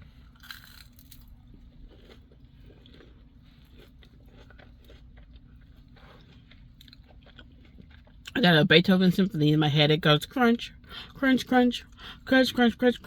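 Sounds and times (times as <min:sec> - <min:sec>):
person chewing crunchy chicken: 0:00.0 - 0:08.4
low steady hum: 0:00.0 - 0:13.0.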